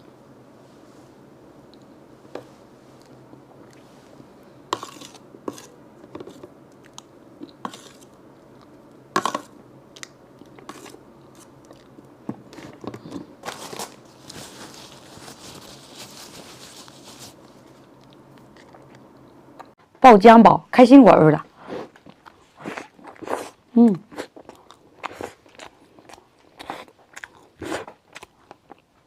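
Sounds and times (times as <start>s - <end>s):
soft hissy rustle: 13.5s - 18.1s.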